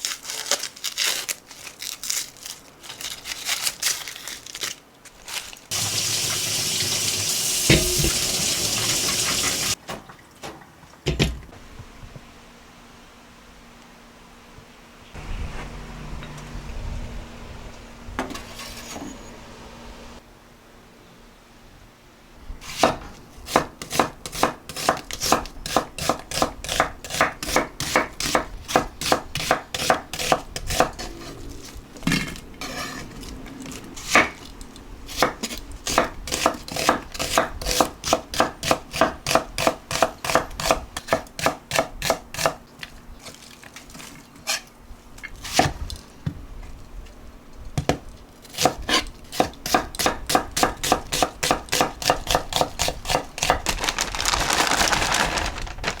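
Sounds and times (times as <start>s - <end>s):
knife chopping on cutting board: 22.7s - 31.0s, 35.2s - 42.6s, 47.8s - 53.6s.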